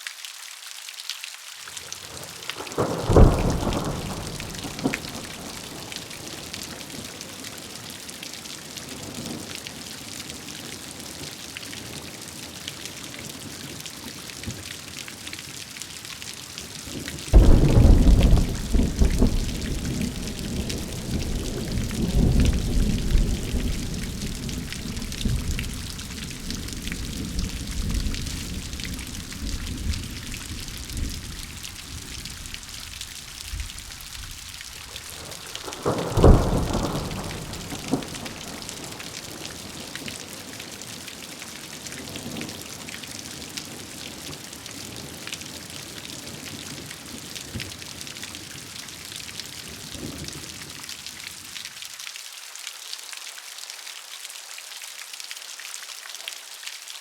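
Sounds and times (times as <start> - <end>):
rain hiss: 0.0 - 57.0
thunderclap and rumble: 2.9 - 5.6, 17.4 - 39.2.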